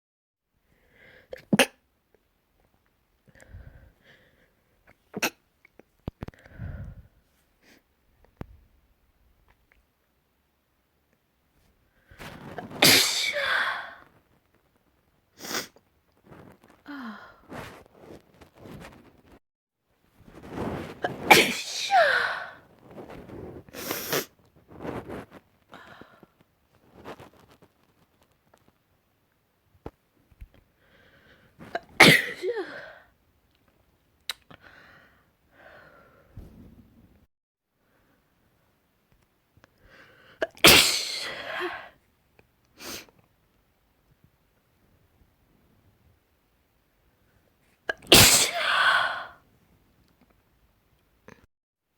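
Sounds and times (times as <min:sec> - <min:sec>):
quiet breaths: 0:00.6 - 0:01.4, 0:03.2 - 0:05.0, 0:06.2 - 0:08.5, 0:30.6 - 0:31.7, 0:34.5 - 0:37.2, 0:39.6 - 0:40.4
person sneezing: 0:12.2 - 0:14.0, 0:20.8 - 0:22.6, 0:31.6 - 0:33.0, 0:40.4 - 0:41.9, 0:47.9 - 0:49.4.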